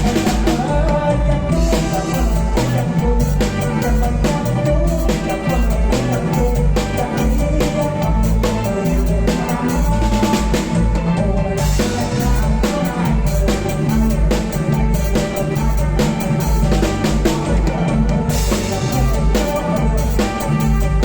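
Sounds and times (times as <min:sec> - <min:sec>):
drum kit beat: 0:00.0 - 0:21.0
live band playing: 0:00.0 - 0:21.0.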